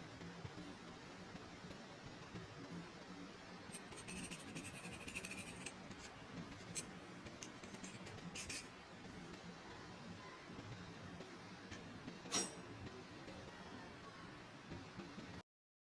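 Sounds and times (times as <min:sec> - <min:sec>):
rapid scratching and ticking: 0:03.7 - 0:06.8, 0:07.4 - 0:08.7.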